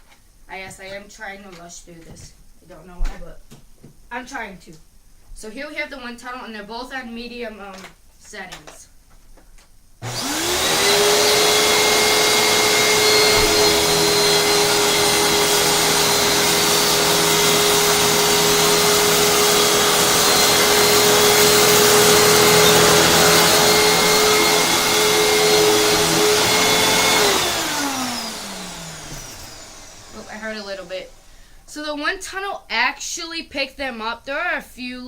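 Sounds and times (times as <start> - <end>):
vacuum cleaner motor whine: 10.0 - 31.7.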